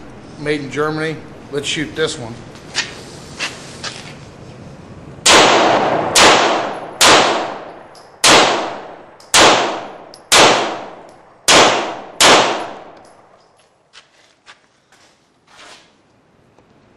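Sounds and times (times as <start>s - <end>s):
pistol shots: 5.2s - 13.0s.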